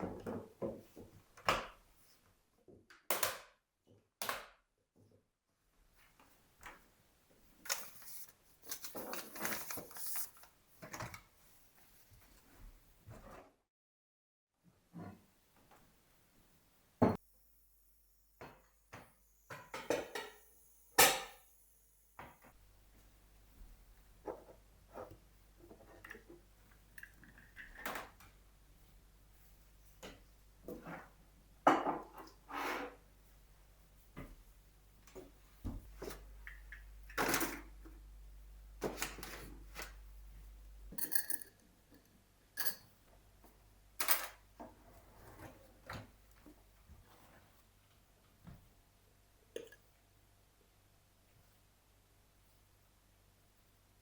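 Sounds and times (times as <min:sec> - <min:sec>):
low hum: 0:17.2 - 0:24.2.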